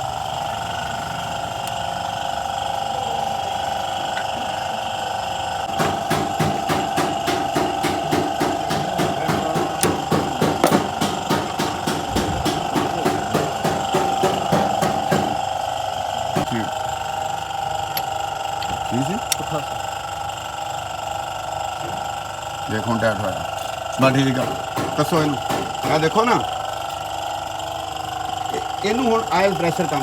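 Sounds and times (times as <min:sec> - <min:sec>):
steady hum: 0:00.0 - 0:30.0.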